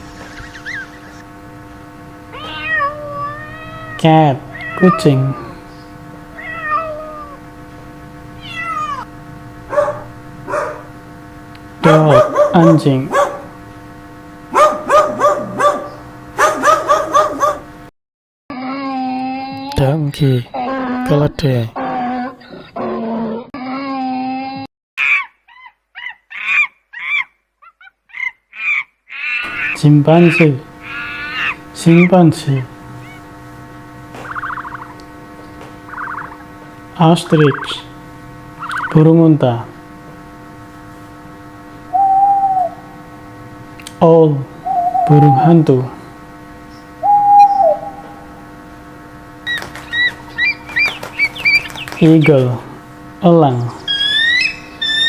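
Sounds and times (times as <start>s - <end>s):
owl hooting: 0.0s - 1.2s, 19.1s - 22.8s, 35.9s - 36.5s, 49.5s - 52.8s, 53.6s - 55.0s
high chirping calls: 0.1s - 1.2s, 49.5s - 52.8s, 53.8s - 55.0s
donkey braying: 19.0s - 23.1s, 49.5s - 52.8s.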